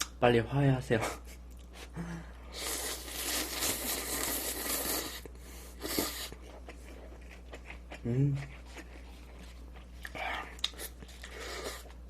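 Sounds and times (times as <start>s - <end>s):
person slurping noodles: 2.5s - 6.4s.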